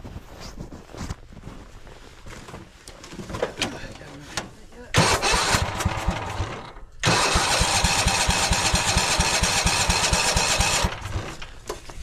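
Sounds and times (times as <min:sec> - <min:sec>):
engine starter cranking: 0:04.9 - 0:11.6.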